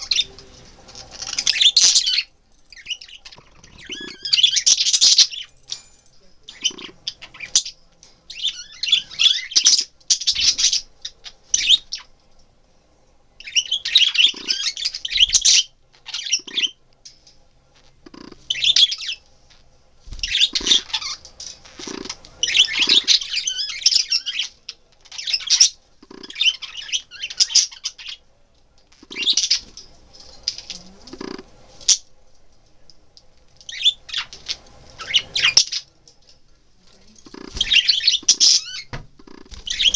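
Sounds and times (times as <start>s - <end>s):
budgerigars chattering and squawking: 0.0s - 0.4s, 1.1s - 5.5s, 6.5s - 12.1s, 13.4s - 16.8s, 18.1s - 19.2s, 20.2s - 28.2s, 29.0s - 29.8s, 33.7s - 35.9s, 37.2s - 39.9s.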